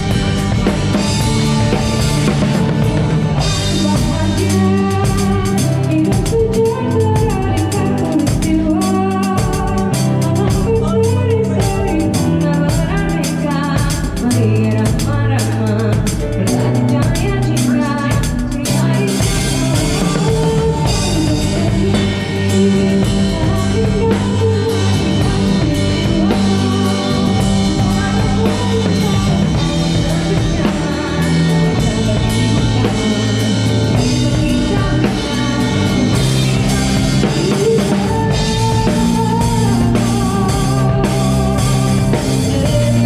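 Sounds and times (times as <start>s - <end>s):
bass: 0.0s - 43.0s
drum kit: 0.0s - 43.0s
guitar: 0.0s - 43.0s
person singing: 0.0s - 43.0s.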